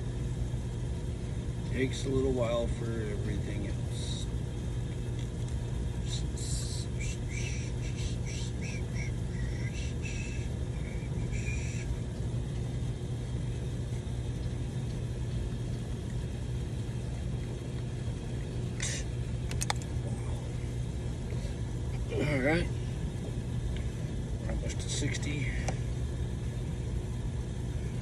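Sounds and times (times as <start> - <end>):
water pump humming: 0.0 - 28.0
sharp clicks: 19.5 - 19.9.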